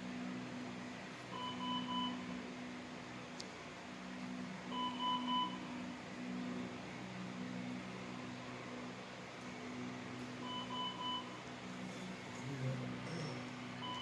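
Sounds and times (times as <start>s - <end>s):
low machine hum: 0.0s - 14.0s
monitor alarm short beeps: 1.4s - 2.2s, 10.4s - 11.4s.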